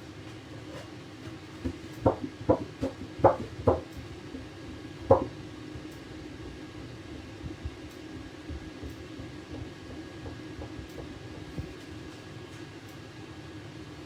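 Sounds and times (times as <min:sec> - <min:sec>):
appliance hum: 0:00.0 - 0:14.0
kitchen knocks and clatters: 0:01.6 - 0:03.9.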